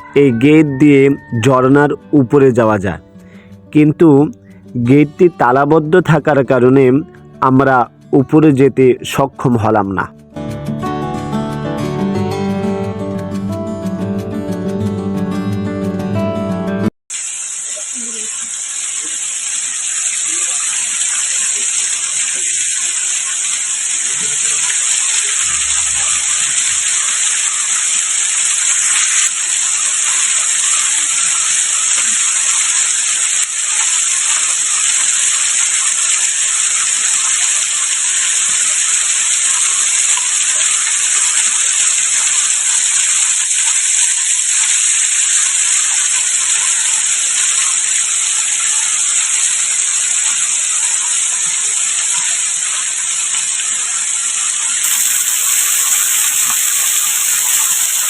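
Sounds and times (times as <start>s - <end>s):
waterfall rushing: 17.1s - 45.6s, 49.5s - 58.0s.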